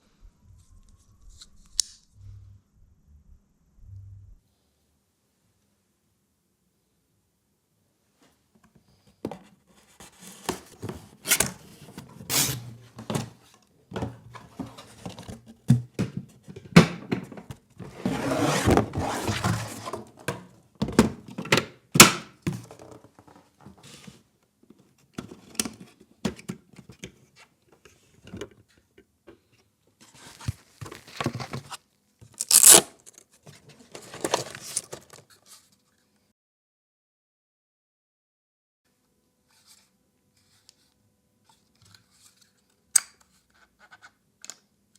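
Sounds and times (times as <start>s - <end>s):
packaging rustling: 30.3s - 35.6s.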